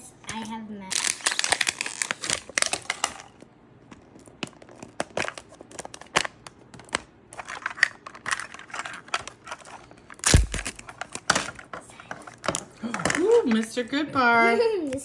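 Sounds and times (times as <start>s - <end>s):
plastic wrapping crinkling: 0.8s - 3.4s.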